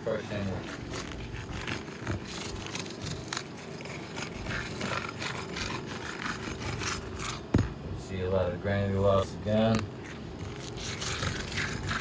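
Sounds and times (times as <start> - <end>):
metal tool scraping shingles: 0.1 - 7.5, 9.6 - 12.0.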